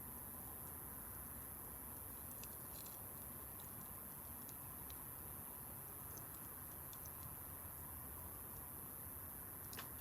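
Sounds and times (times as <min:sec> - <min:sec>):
low steady hiss: 0:00.0 - 0:10.0.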